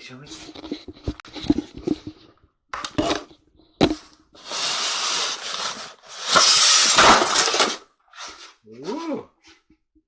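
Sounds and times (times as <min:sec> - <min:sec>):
packaging tearing and rustling: 0:04.4 - 0:08.5.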